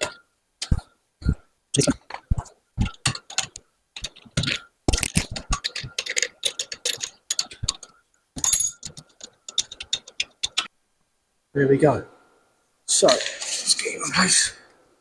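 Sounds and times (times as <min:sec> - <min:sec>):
sharp metallic clicks: 0:00.0 - 0:10.7.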